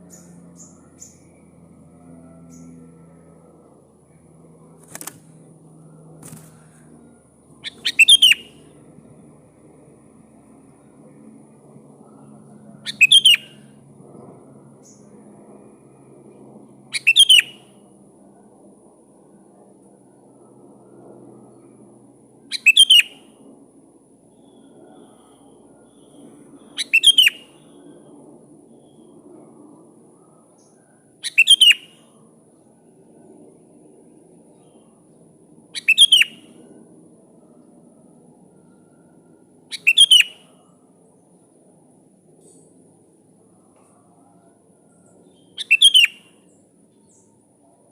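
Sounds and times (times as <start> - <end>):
bird calling: 7.6 - 8.6, 12.8 - 13.6, 16.9 - 17.6, 22.5 - 23.2, 25.9 - 27.8, 30.6 - 32.0, 35.8 - 36.5, 39.7 - 40.6, 45.3 - 46.4
faint high chirp: 7.6 - 8.6, 12.8 - 13.6, 39.7 - 40.7, 43.8 - 47.4.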